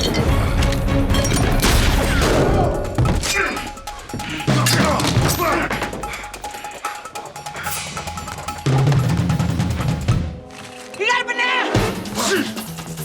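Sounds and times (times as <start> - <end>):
fight thuds and crashes: 0.0 - 6.1
action film score: 0.0 - 13.0.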